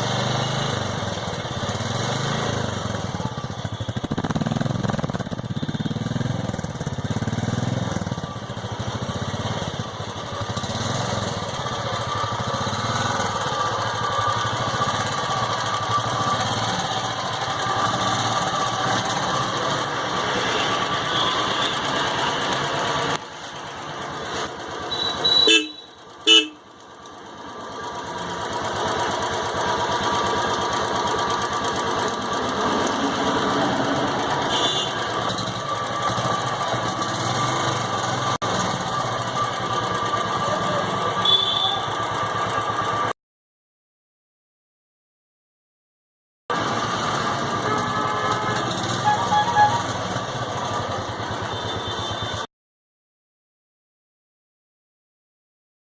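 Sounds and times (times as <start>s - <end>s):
motorcycle engine running: 0.0s - 43.1s, 46.5s - 52.4s
horn beeps: 24.9s - 26.6s, 34.3s - 35.1s, 38.9s - 42.0s, 47.6s - 50.0s.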